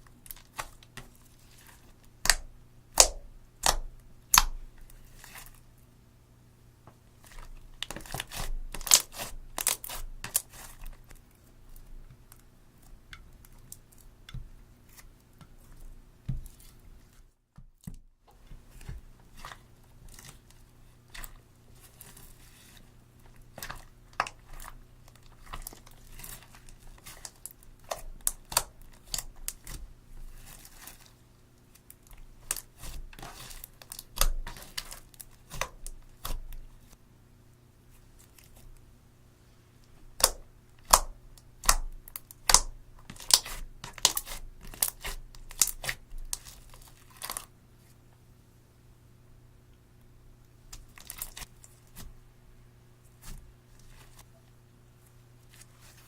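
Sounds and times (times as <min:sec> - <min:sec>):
slime kneaded by hand: 0:00.2 - 0:05.6, 0:07.2 - 0:11.2, 0:13.1 - 0:37.0, 0:40.1 - 0:47.5.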